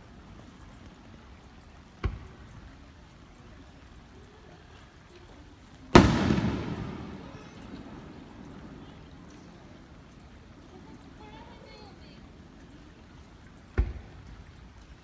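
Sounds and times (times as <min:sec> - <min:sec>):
fireworks bursting: 0:05.9 - 0:11.8.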